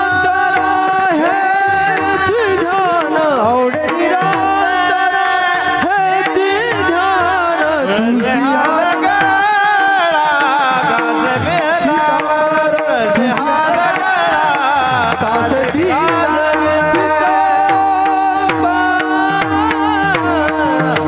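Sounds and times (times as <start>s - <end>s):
man singing devotional song: 0.0s - 21.0s
hand drum playing: 5.8s - 21.0s.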